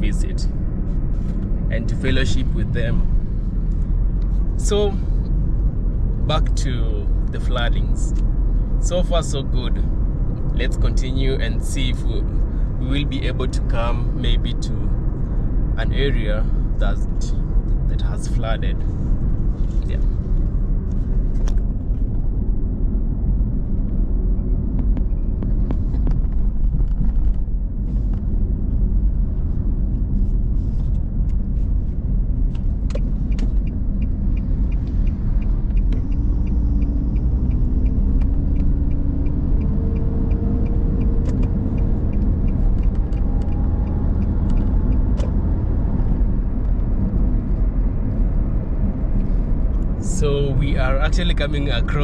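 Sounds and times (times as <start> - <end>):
car engine and tyre rumble: 0.0 - 52.0
light regular ticking: 31.1 - 50.2.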